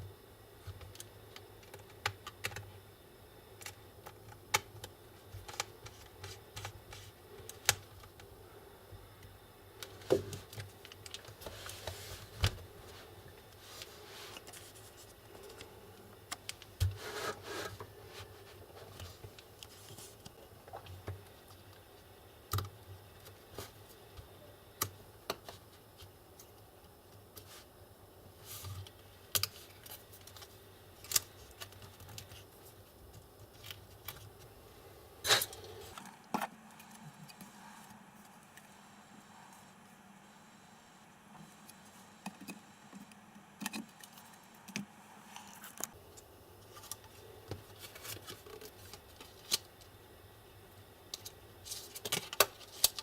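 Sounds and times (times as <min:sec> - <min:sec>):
faint low hum: 0:00.0 - 0:53.0.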